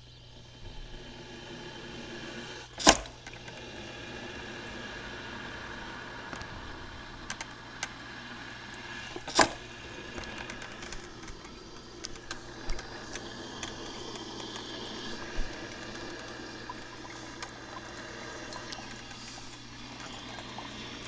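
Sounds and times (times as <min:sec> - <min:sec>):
coffee maker brewing: 0:00.0 - 0:21.0
water sputtering pops: 0:09.1 - 0:21.0.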